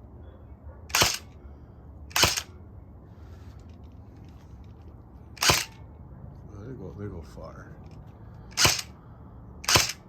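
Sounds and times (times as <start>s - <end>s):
airsoft gun shots: 0.9s - 1.3s, 2.1s - 2.5s, 5.4s - 5.8s, 8.5s - 8.9s, 9.6s - 10.0s.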